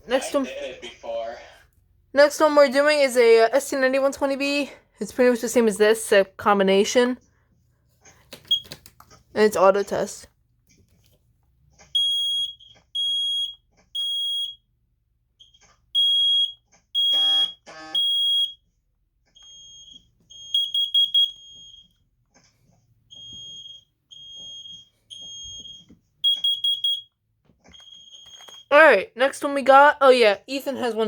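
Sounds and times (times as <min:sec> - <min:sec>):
smoke alarm high-pitched beeps: 0:12.0 - 0:14.7, 0:15.4 - 0:18.6, 0:19.4 - 0:22.0, 0:23.1 - 0:28.9.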